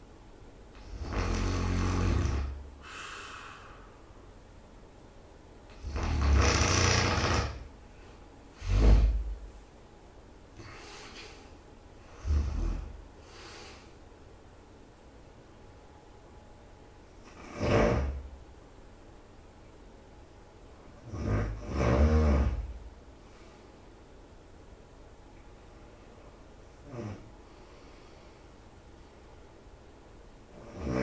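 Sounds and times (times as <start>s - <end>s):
person snoring loudly: 0.8s - 3.3s, 5.7s - 7.7s, 8.6s - 9.4s, 12.1s - 13.0s, 17.3s - 18.3s, 21.0s - 22.8s, 26.9s - 27.2s, 30.5s - 31.0s
quiet breath: 2.4s - 4.3s, 10.6s - 12.2s, 12.8s - 14.0s, 22.5s - 24.0s, 27.1s - 29.4s.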